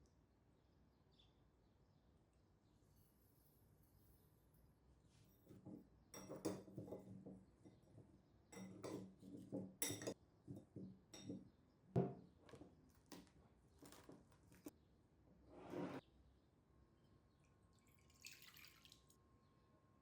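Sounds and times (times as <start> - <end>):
utensils clinking against dishes: 9.8 - 10.2.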